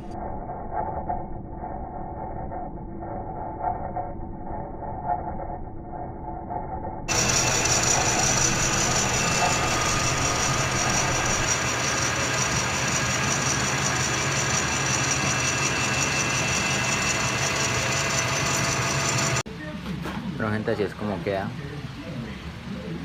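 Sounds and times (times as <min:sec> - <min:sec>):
high steady whine: 0:00.0 - 0:19.4
metal lathe running: 0:07.1 - 0:19.4.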